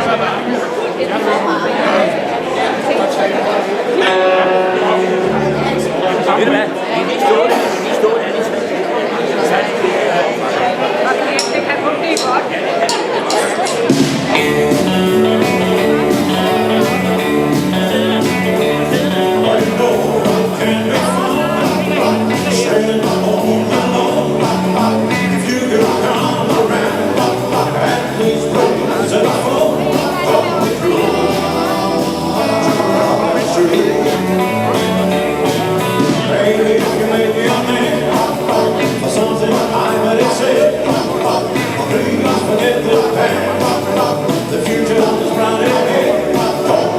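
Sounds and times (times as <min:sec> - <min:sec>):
band music with guitar: 0:00.0 - 0:00.7, 0:03.4 - 0:08.6, 0:11.2 - 0:46.9
pulsing bass line: 0:14.0 - 0:46.9
person singing: 0:14.3 - 0:46.9.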